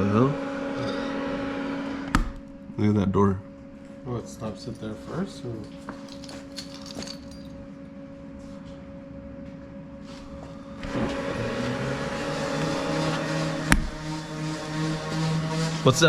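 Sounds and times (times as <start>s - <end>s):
steady electrical hum: 0.0s - 16.0s
motor whir: 10.3s - 16.0s.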